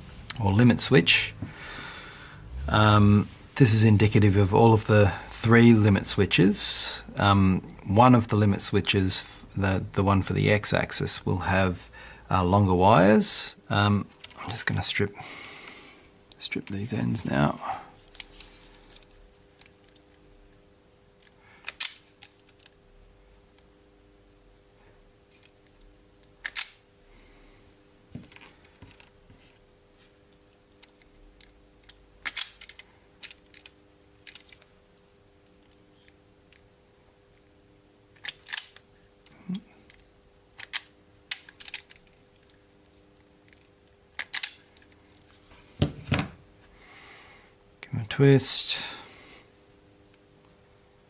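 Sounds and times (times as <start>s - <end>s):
faint steady hum: 0.0s - 51.0s
wire strippers clicking and snipping: 26.4s - 26.8s, 30.3s - 34.7s, 38.2s - 45.2s.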